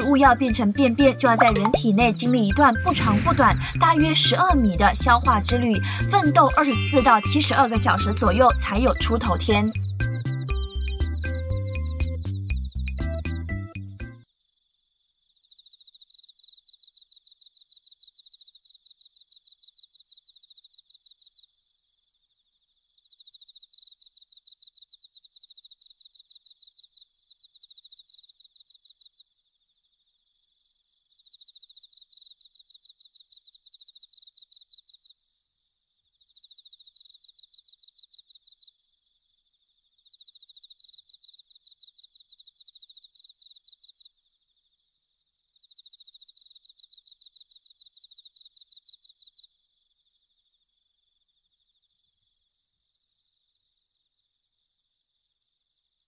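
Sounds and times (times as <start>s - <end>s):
cricket chirping: 14.2s - 56.0s.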